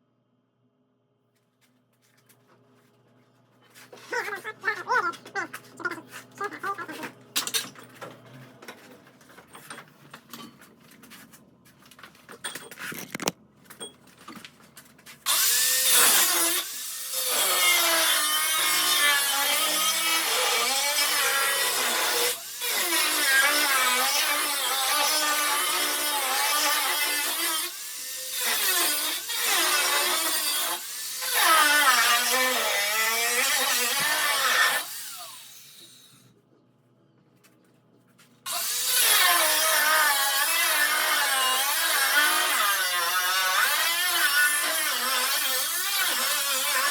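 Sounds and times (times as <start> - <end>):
power saw cutting sheet metal: 15.3 - 36.2, 38.5 - 46.9.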